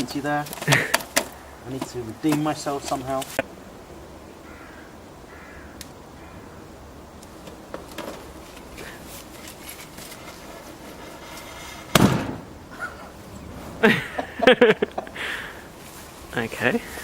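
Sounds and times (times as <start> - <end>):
firecracker bang: 11.6 - 15.8.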